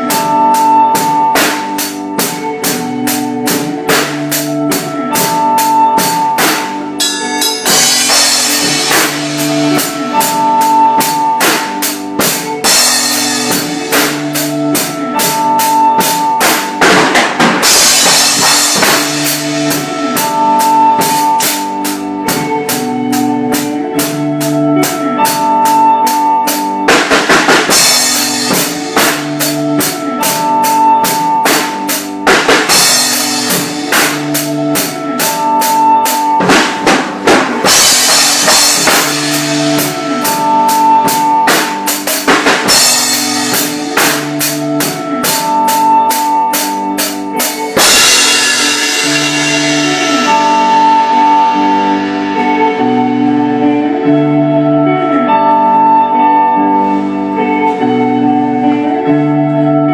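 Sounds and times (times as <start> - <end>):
drum kit beat: 0.0 - 54.0
electric guitar with delay: 0.0 - 59.9
cymbal wash: 47.9 - 52.8.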